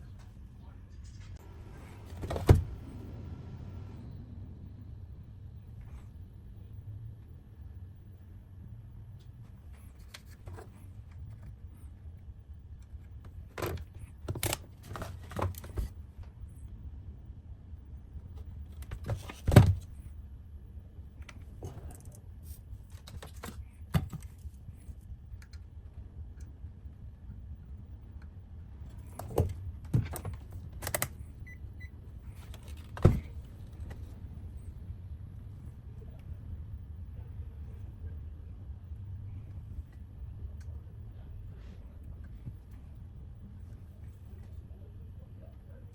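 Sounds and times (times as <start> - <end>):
steady low hum: 0.0 - 45.9.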